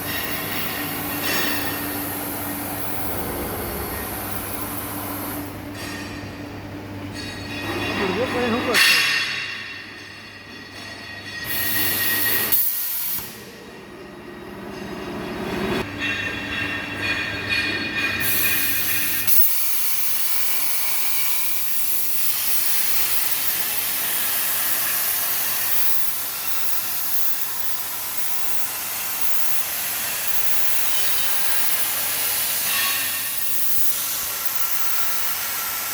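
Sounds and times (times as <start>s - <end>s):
plasma cutter hissing: 0.0s - 5.6s, 11.5s - 13.5s, 18.2s - 35.9s
low hum: 1.3s - 7.3s.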